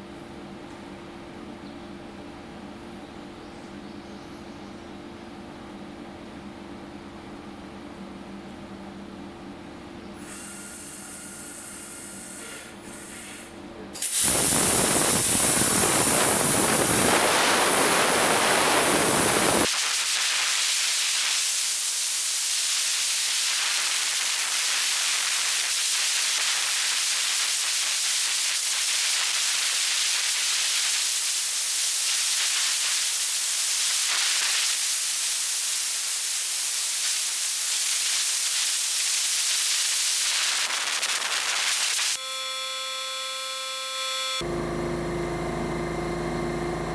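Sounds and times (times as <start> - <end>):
low machine hum: 0.0 - 14.0, 42.2 - 46.9
plasma torch hissing: 10.3 - 42.3.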